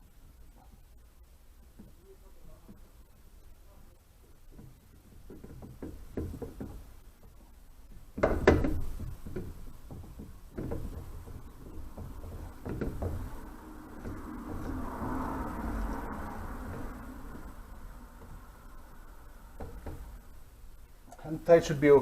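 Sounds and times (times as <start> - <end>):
handling knocks and clicks: 4.5 - 18.6
steady rushing noise: 10.9 - 20.7.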